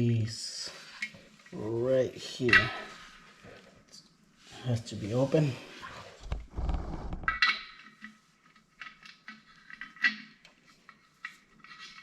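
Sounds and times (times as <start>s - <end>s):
metal pipe fittings clinking: 2.4s - 3.1s.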